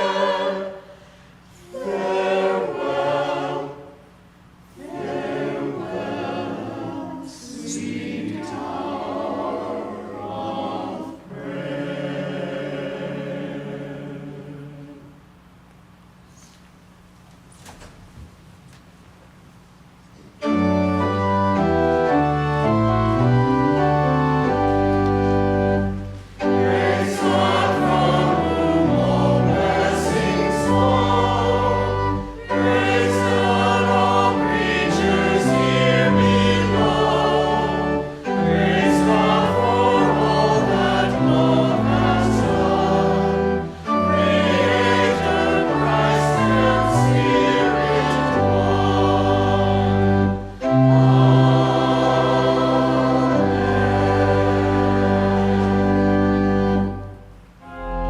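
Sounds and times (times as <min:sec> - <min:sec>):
organ accompaniment: 0:00.0 - 0:00.9, 0:07.7 - 0:15.0, 0:20.4 - 0:58.0
choir singing a hymn: 0:00.0 - 0:15.3, 0:20.4 - 0:58.0.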